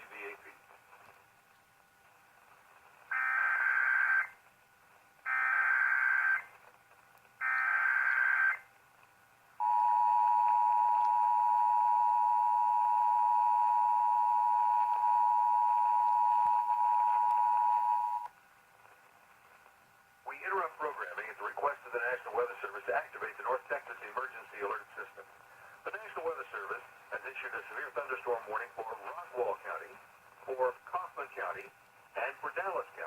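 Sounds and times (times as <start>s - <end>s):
two-tone attention signal: 9.6s - 18.3s.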